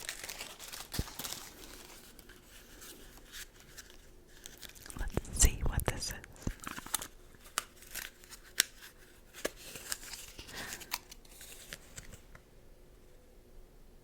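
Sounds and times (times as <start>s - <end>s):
packaging clicks and crackles: 0.0s - 5.2s, 6.4s - 12.4s.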